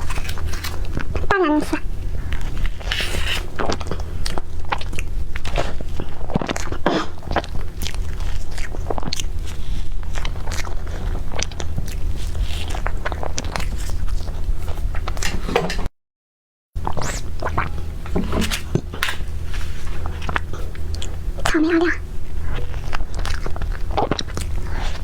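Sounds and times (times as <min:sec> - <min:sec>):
person chewing and biting: 0:00.0 - 0:15.4, 0:16.8 - 0:25.0
low hum: 0:16.8 - 0:25.0.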